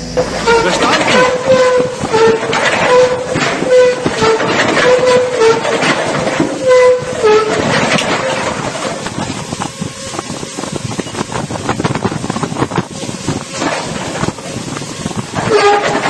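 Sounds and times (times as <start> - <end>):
horn blasts: 0.0 - 10.3, 15.4 - 16.0
rumbling clatter: 0.0 - 16.0.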